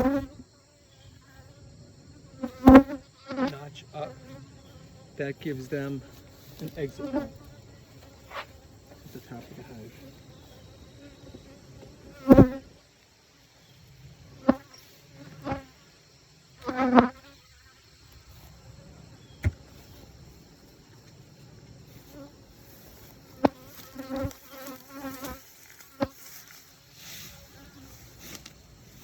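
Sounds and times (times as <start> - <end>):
bees flying close past: 0.0 - 12.8, 14.2 - 29.0
honeybees buzzing: 0.0 - 13.0, 13.7 - 29.0
sharp knocks: 19.4 - 19.6.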